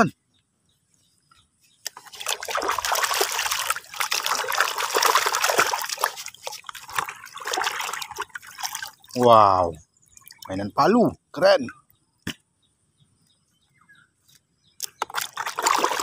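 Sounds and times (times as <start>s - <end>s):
water splashing and trickling: 1.8s - 10.8s, 14.8s - 16.0s.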